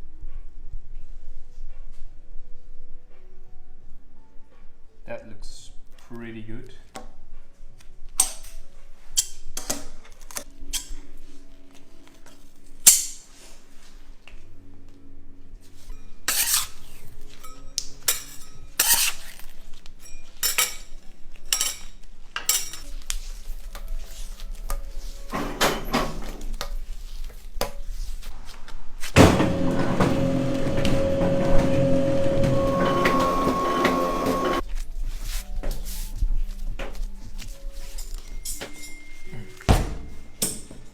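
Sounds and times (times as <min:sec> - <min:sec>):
tools scraping on hard surface: 0:15.8 - 0:17.5, 0:29.1 - 0:34.6.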